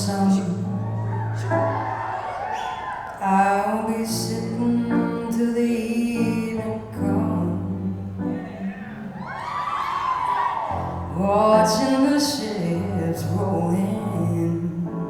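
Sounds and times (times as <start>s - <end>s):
soul song with male vocal: 0.0s - 1.6s, 3.2s - 9.2s, 11.0s - 15.0s.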